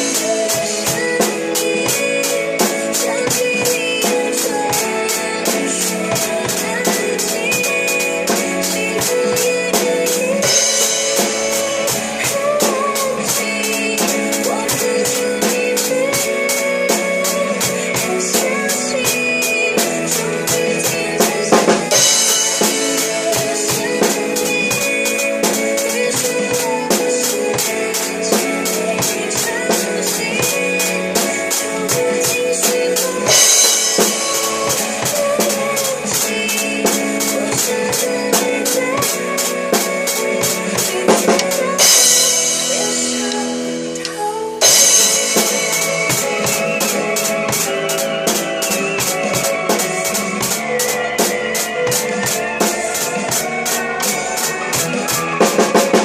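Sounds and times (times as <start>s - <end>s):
drum kit beat: 0.0s - 56.0s
pop ballad backing track: 0.0s - 56.0s.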